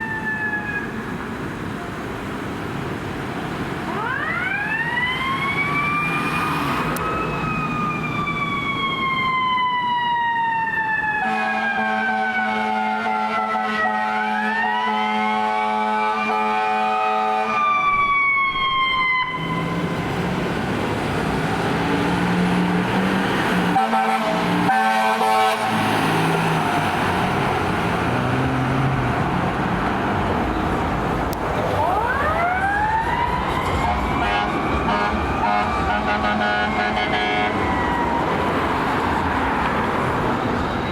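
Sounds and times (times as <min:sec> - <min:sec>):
siren wailing: 0:00.0 - 0:01.0, 0:03.9 - 0:20.8, 0:31.7 - 0:39.5
road noise: 0:00.0 - 0:40.9
air horn blasts: 0:11.2 - 0:17.6, 0:23.7 - 0:25.8, 0:33.8 - 0:37.6.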